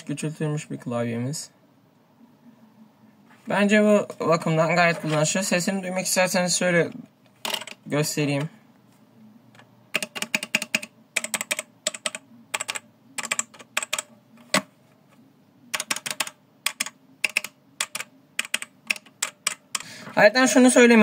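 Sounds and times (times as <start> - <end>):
mechanical keyboard typing: 7.5 - 7.8, 9.9 - 14.7, 15.7 - 19.9.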